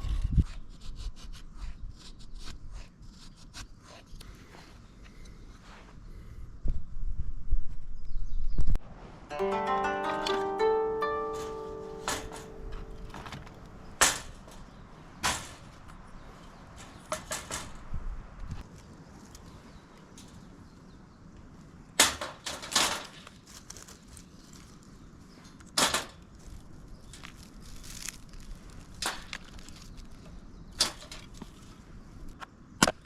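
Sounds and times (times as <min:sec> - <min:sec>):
firewood snapping and cracking: 0:27.1 - 0:30.2.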